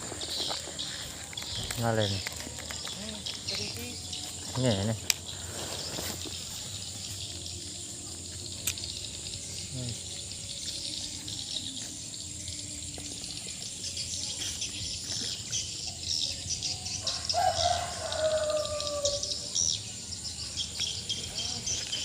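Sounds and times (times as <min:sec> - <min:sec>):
birds chirping: 0:00.0 - 0:22.0
insects chirping: 0:00.0 - 0:22.0
rooster crowing: 0:17.0 - 0:19.6.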